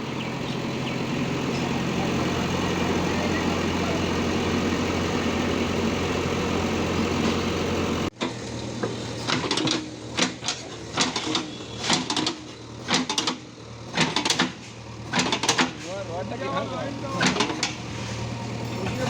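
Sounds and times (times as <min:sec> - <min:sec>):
diesel engine running: 0:00.0 - 0:19.0
sharp clicks and knocks: 0:08.8 - 0:15.8.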